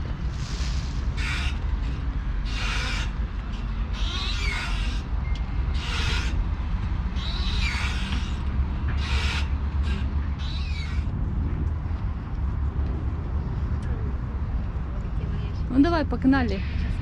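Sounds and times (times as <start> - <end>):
playground swing squeaking: 0.0 - 11.2
low steady rumble: 0.0 - 17.0.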